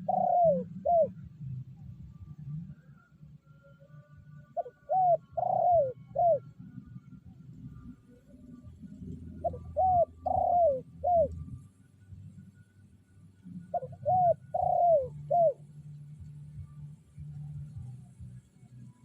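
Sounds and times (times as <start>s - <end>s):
dove cooing: 0.0s - 1.4s, 4.5s - 6.7s, 8.9s - 11.5s, 13.6s - 15.7s.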